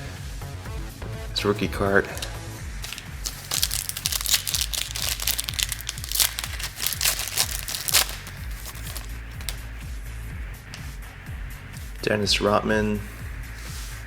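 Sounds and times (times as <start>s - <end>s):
background music with bass line: 0.0s - 14.0s
trading cards rustling and clicking: 2.0s - 9.6s.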